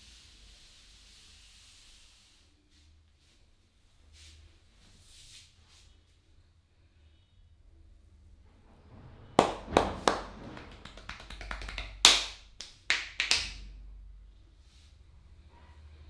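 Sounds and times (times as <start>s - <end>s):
hands slapping on head: 9.4s - 13.6s.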